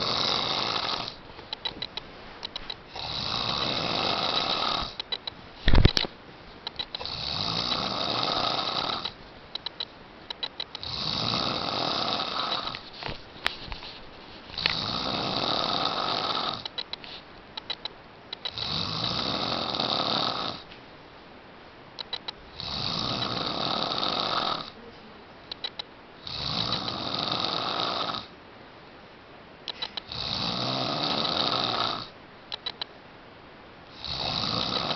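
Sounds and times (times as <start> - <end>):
person snoring: 0.0 - 1.2, 2.9 - 5.0, 7.0 - 9.2, 10.8 - 12.8, 14.6 - 16.6, 18.5 - 20.6, 22.5 - 24.8, 26.2 - 28.3, 30.0 - 32.1, 33.9 - 34.9
loud thump: 5.7 - 6.0
quick clicks: 9.0 - 10.8, 16.6 - 18.6, 22.0 - 22.4, 25.5 - 25.9, 32.5 - 32.9.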